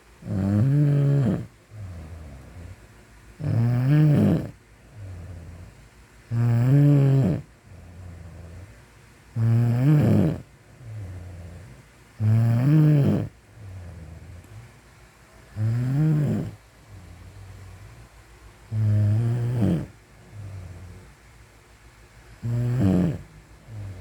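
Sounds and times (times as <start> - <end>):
person snoring: 0.2 - 2.6, 3.4 - 5.6, 6.3 - 8.6, 9.4 - 14.2, 15.6 - 16.6, 18.7 - 21.0, 22.4 - 24.0
quiet breath: 7.4 - 9.0, 13.3 - 21.4, 23.2 - 24.0.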